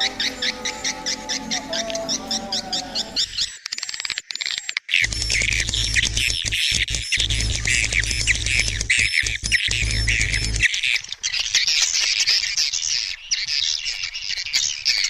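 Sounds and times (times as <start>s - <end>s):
clicking trills: 5.0s - 10.7s
swiftlets chirping: 5.0s - 11.0s
steady low hum: 5.1s - 10.7s.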